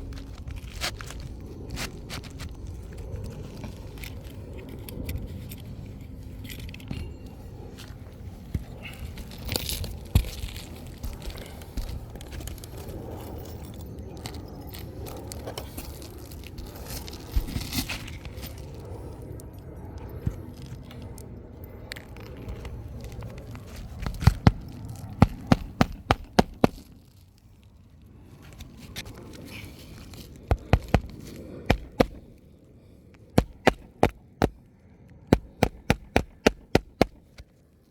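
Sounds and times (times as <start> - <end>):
shingles crackling and tearing: 0.0 - 4.4, 8.9 - 12.9, 15.6 - 18.5, 22.6 - 27.3, 28.5 - 32.3, 33.3 - 34.6, 35.3 - 37.5.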